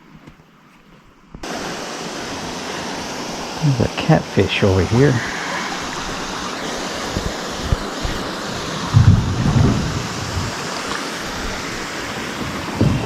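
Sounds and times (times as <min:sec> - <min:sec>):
water rushing over dam: 0:01.4 - 0:13.0
low thumps: 0:04.8 - 0:10.6.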